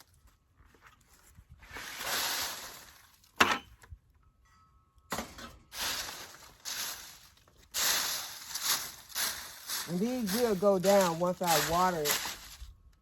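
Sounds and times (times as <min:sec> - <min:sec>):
dry leaves rustling: 0:01.7 - 0:03.3, 0:05.7 - 0:12.7.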